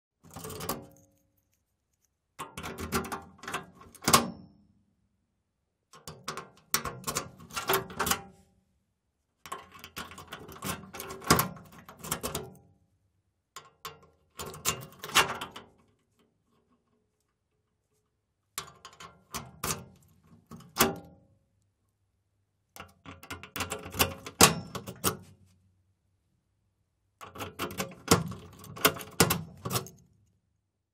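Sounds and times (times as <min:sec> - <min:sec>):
key turning in metal lock: 0:00.2 - 0:04.3, 0:06.0 - 0:08.2, 0:09.5 - 0:12.6, 0:13.7 - 0:15.7, 0:22.8 - 0:25.2, 0:27.2 - 0:30.2.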